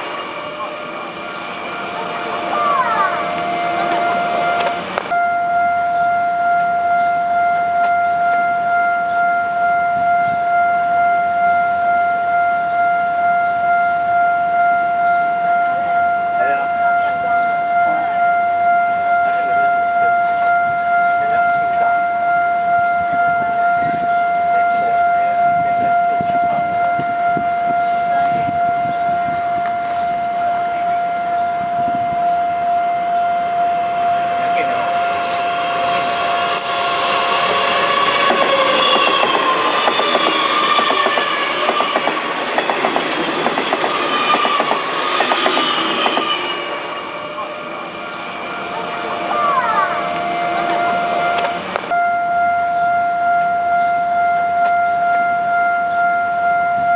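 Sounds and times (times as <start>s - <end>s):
level crossing alarm tone: 0.0s - 56.9s
train rumble: 0.0s - 56.9s
train wheels clicking over rail joints: 37.9s - 46.3s.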